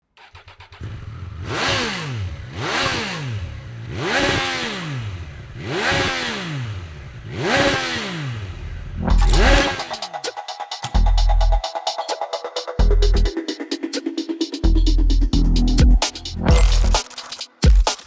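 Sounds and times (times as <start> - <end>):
motorcycle engine revving from idle: 0.2 - 8.9.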